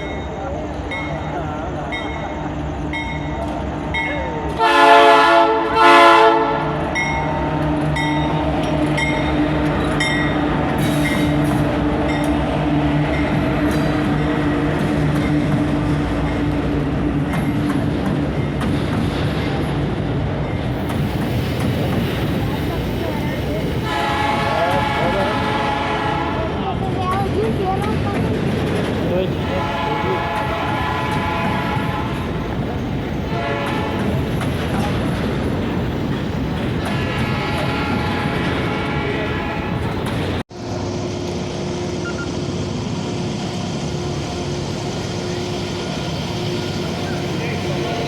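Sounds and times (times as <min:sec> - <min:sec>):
train passing rumble: 0:00.0 - 0:48.0
train horn blasts: 0:04.6 - 0:07.7, 0:23.8 - 0:26.6, 0:29.4 - 0:32.4, 0:33.3 - 0:34.3, 0:36.8 - 0:40.0.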